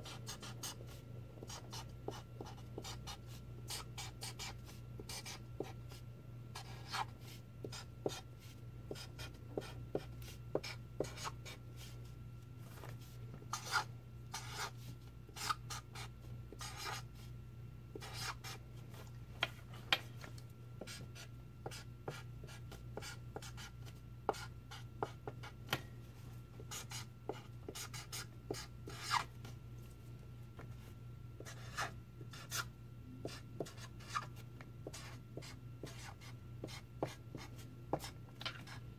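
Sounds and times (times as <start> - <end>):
steady low hum: 0.0 - 38.9
marker scratching on paper: 6.6 - 8.2, 8.9 - 11.9, 13.5 - 14.8, 15.4 - 17.0, 18.0 - 18.6, 26.7 - 29.3, 31.4 - 38.8.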